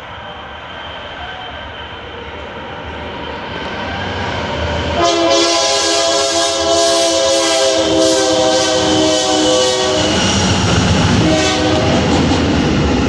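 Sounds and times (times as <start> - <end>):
freight train rumble: 0.0 - 13.0
locomotive air horn: 4.9 - 12.3.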